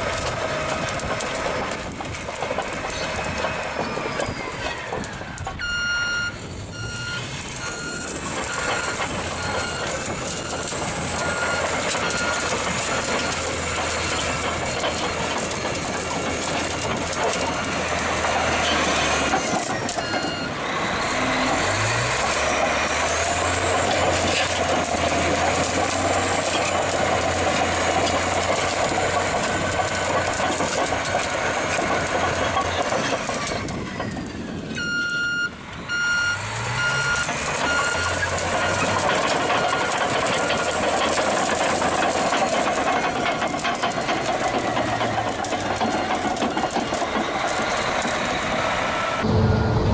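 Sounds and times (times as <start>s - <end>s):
diesel engines running: 0.0s - 49.9s
reversing alarm beeping: 5.6s - 16.0s, 17.4s - 21.9s, 34.8s - 40.8s, 49.1s - 49.9s.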